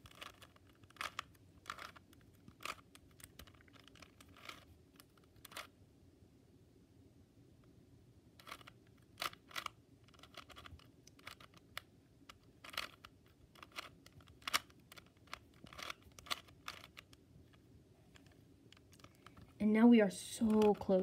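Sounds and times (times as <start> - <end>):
puzzle cube layers clicking: 0.0 - 5.7, 8.4 - 19.6, 20.4 - 21.0.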